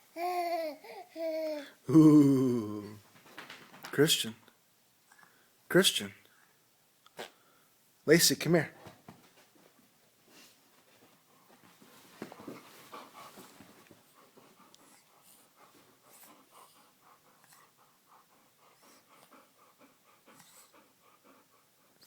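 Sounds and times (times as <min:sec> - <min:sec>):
dog panting: 0:10.3 - 0:22.0.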